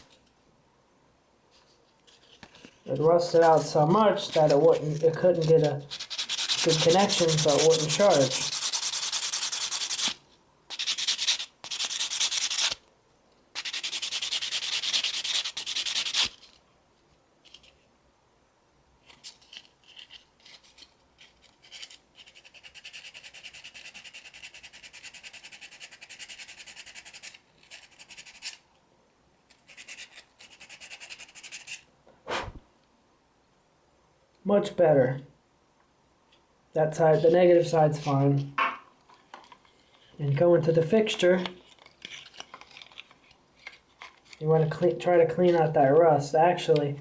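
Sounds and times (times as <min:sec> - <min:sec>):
sandpaper scraping metal: 0:02.9 - 0:12.8, 0:13.6 - 0:16.4.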